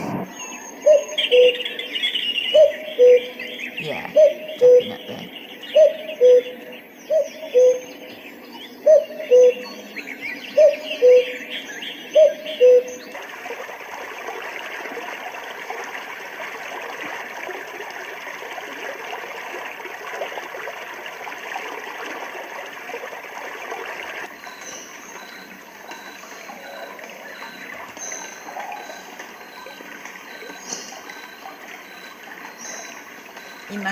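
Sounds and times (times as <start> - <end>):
chirping birdsong: 0.0 - 13.2
running water: 11.4 - 33.9.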